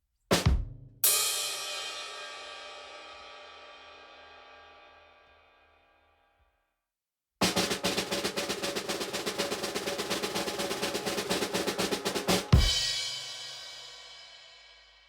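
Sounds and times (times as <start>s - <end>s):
loud drum hit ringing out: 7.4s - 13.9s
snare drum roll: 7.4s - 14.2s.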